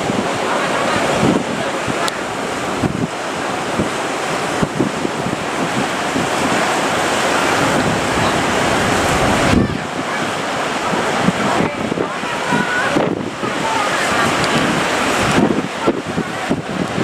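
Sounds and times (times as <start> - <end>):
heavy surf breaking on shore: 0.0 - 17.0
wind buffeting microphone: 0.0 - 17.0.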